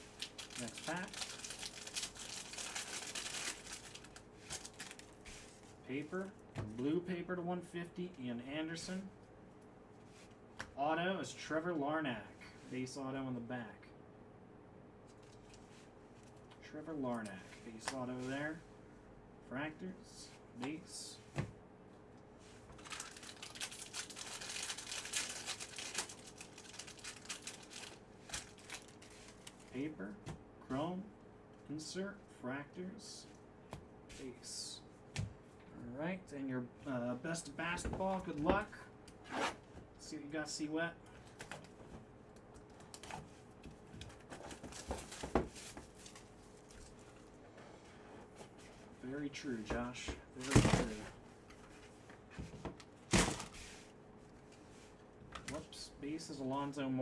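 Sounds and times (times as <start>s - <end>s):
foil wrapper crinkling and tearing: 0.0s - 5.2s, 22.8s - 29.7s.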